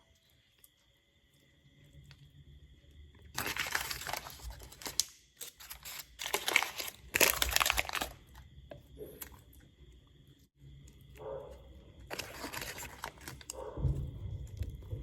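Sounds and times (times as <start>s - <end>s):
plastic wrapper crinkling: 3.3s - 8.4s, 12.0s - 14.0s.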